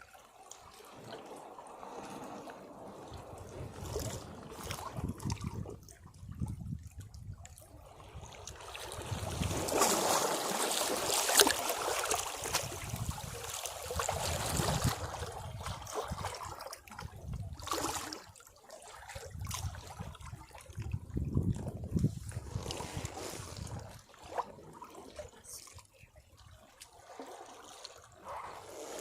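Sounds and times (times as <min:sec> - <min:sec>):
sea waves breaking on rocks: 0:00.2 - 0:05.7, 0:07.7 - 0:16.8.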